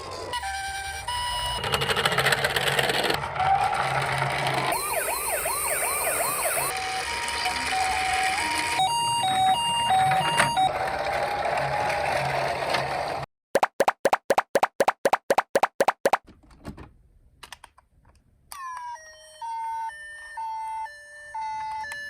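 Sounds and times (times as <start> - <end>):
siren yelp: 0.0 - 1.6, 3.3 - 11.7, 18.6 - 22.0
two-tone siren: 0.0 - 10.9, 18.5 - 22.0
siren wail: 3.2 - 12.4, 18.6 - 22.0.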